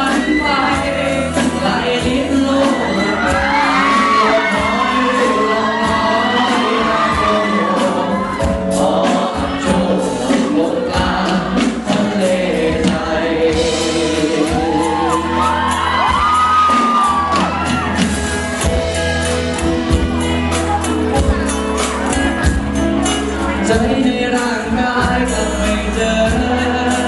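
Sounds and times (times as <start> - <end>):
crowd whooping: 0.0 - 1.7, 2.3 - 9.6, 14.3 - 22.5
crowd cheering: 0.0 - 9.8, 14.3 - 23.7
voices singing with music: 0.0 - 27.0.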